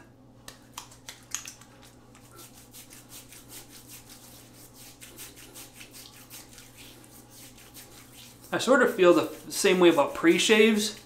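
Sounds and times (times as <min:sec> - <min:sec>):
hands rubbing cream into stubble: 0:00.4 - 0:11.0.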